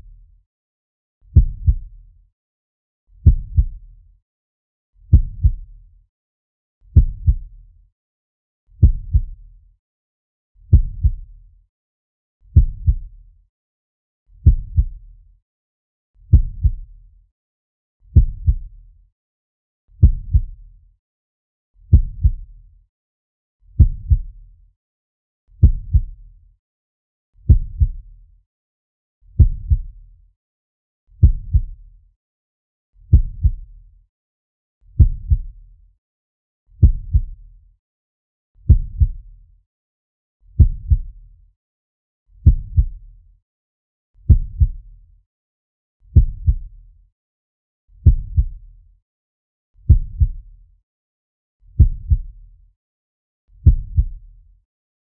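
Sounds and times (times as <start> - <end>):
slow heartbeat double thump: 1.4 - 1.9, 3.2 - 3.8, 5.1 - 5.6, 7.0 - 7.5, 8.8 - 9.3, 10.7 - 11.2, 12.6 - 13.1, 14.4 - 15.0, 16.3 - 16.8, 18.2 - 18.7, 20.0 - 20.5, 21.9 - 22.4, 23.8 - 24.3, 25.6 - 26.1, 27.5 - 28.0, 29.4 - 29.9, 31.2 - 31.7, 33.1 - 33.6, 35.0 - 35.5, 36.8 - 37.4, 38.7 - 39.2, 40.6 - 41.1, 42.4 - 43.0, 44.3 - 44.8, 46.2 - 46.7, 48.0 - 48.6, 49.9 - 50.4, 51.8 - 52.3, 53.6 - 54.2.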